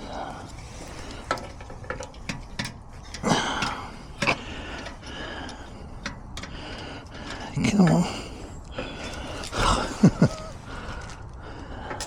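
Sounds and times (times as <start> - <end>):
handling clicks and knocks: 1.0 - 8.0
scraping rustle: 8.8 - 11.4.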